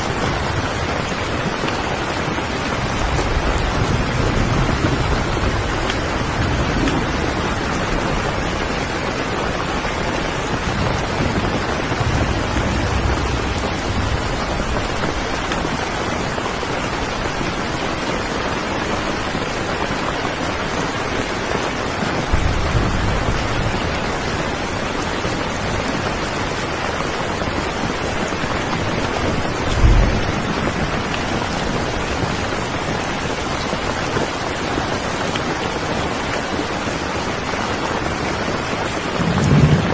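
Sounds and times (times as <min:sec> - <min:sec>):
low thunder rumbles: 0:00.0 - 0:17.8, 0:22.0 - 0:33.8, 0:39.0 - 0:39.9
heavy rain hissing: 0:00.0 - 0:39.9.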